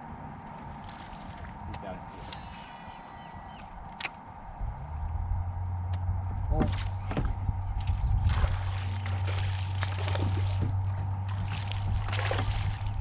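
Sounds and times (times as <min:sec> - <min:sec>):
water splashing and sloshing: 0:00.0 - 0:04.2, 0:06.4 - 0:13.0
steady low hum: 0:00.0 - 0:13.0.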